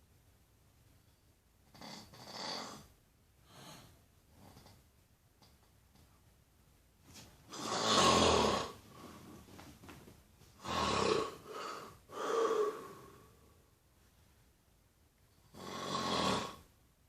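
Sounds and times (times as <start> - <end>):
loud snoring: 1.7 - 2.9, 7.5 - 8.8, 10.6 - 13.1, 15.5 - 16.7.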